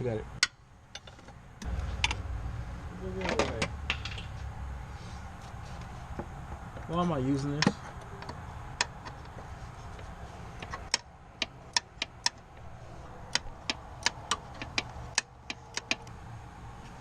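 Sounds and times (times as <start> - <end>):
hand tool clicking on metal: 13.3 - 16.1.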